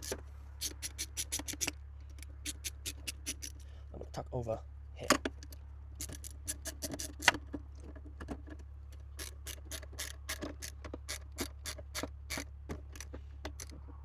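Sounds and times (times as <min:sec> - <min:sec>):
allen key clicking in bolt: 0:00.0 - 0:03.6.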